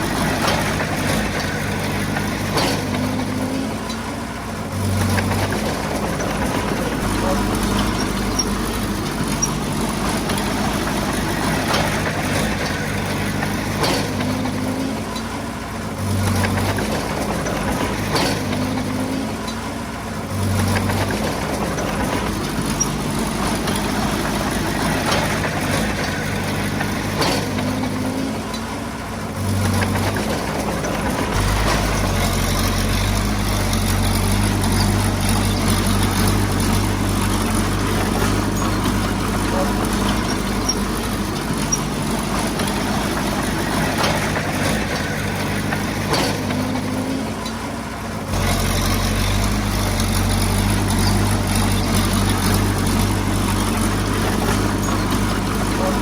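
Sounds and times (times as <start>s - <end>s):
bulldozer diesel engine working: 0.0s - 56.0s.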